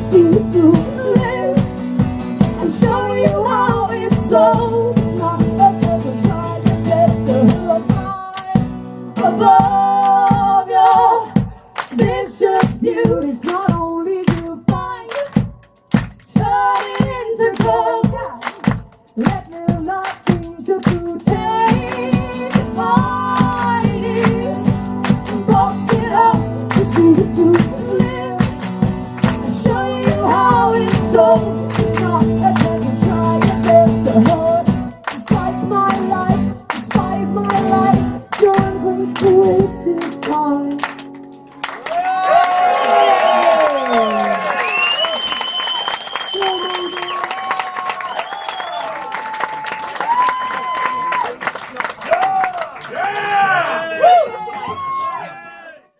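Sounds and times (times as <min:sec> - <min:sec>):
women singing in harmony: 0:00.0 - 0:01.7, 0:02.6 - 0:08.6, 0:09.2 - 0:15.2, 0:16.2 - 0:28.6, 0:29.4 - 0:40.7
strummed guitar: 0:19.2 - 0:41.6.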